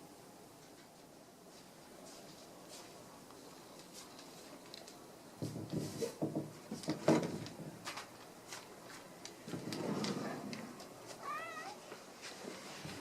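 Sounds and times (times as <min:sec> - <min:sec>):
cat meowing: 0:11.2 - 0:11.8.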